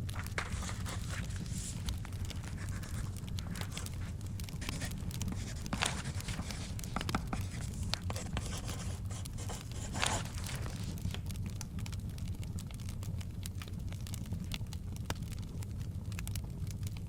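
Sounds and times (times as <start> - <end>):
paper page turning: 0.0 - 11.3
fire crackling and popping: 0.0 - 17.0
light pen scratching: 0.3 - 10.8.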